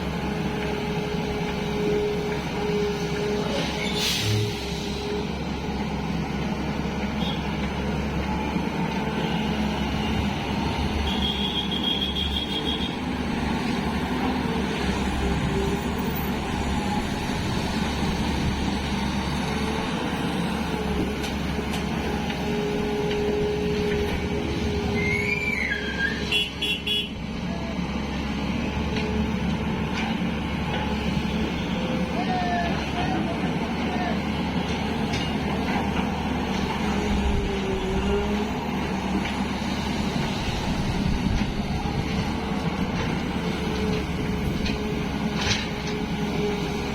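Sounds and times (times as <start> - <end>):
excavator diesel engine running: 0.0 - 46.9
wavering whistle: 25.0 - 26.3.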